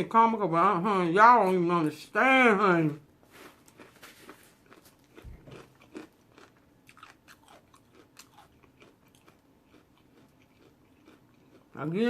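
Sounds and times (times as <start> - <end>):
person chewing food: 3.2 - 12.0.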